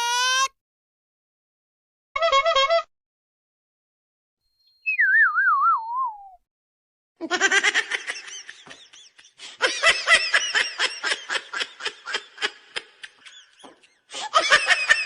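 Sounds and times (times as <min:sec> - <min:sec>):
high hearty laugh: 0:07.2 - 0:15.0.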